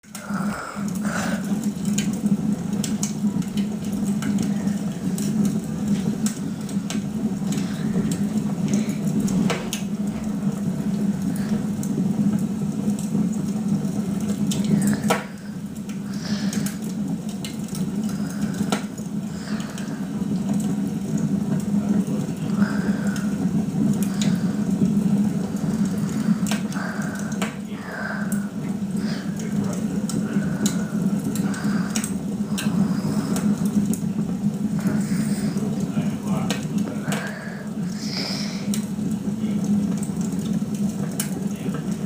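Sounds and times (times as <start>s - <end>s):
wood fire crackling and popping: 0.0s - 42.0s.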